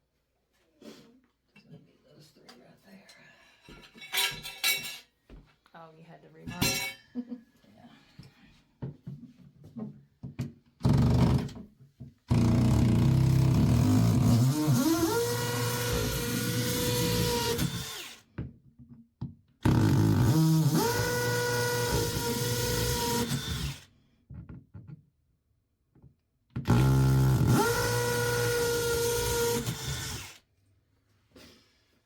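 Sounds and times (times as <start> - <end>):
power drill whining: 12.3 - 18.2, 19.7 - 23.9, 26.7 - 30.4.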